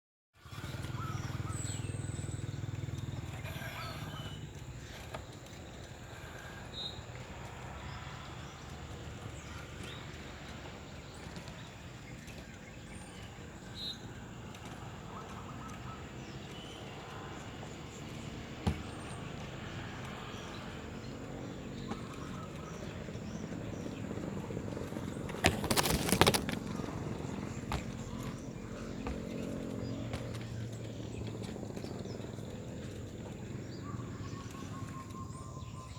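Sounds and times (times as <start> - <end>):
dove cooing: 0.5 - 5.0, 20.1 - 35.9.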